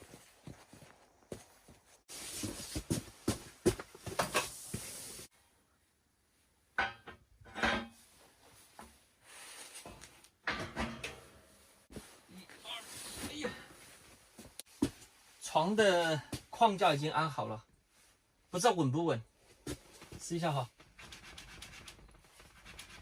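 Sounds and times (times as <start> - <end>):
metal bed frame parts clattering: 6.8 - 8.0, 9.8 - 11.6.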